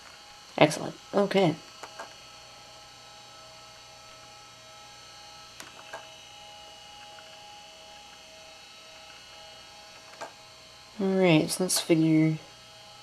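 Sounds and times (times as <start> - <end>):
electrical hum: 0.0 - 13.0
high tonal whine: 0.0 - 13.0.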